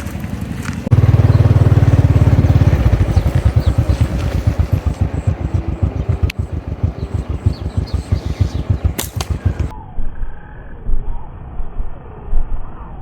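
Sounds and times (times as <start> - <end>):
motorcycle engine puttering: 0.0 - 9.7
sharp click: 8.9 - 9.7.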